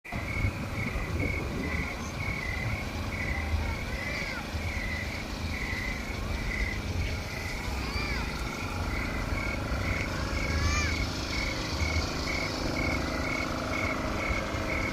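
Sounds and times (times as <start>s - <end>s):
constant low rumble: 0.1s - 14.9s
pulsing high insect call: 0.1s - 14.9s.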